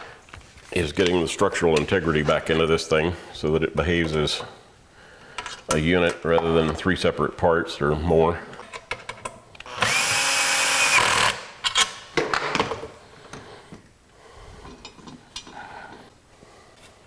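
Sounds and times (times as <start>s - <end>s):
handling of parts: 8.5s - 9.6s, 11.6s - 16.1s
power drill driving screw: 9.6s - 11.5s.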